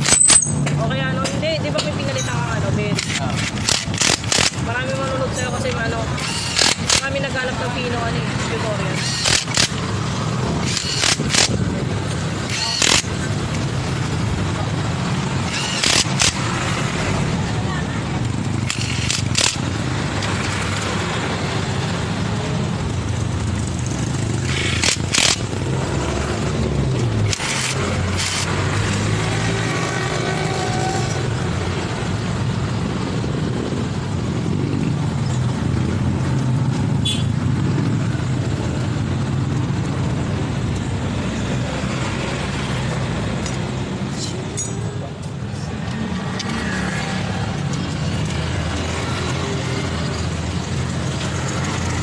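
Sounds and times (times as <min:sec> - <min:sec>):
sharp clicks: 0:02.9 - 0:04.7, 0:06.2 - 0:07.3, 0:08.9 - 0:09.9, 0:10.6 - 0:13.7, 0:15.4 - 0:16.7, 0:18.2 - 0:21.0, 0:24.2 - 0:25.8, 0:26.9 - 0:29.2.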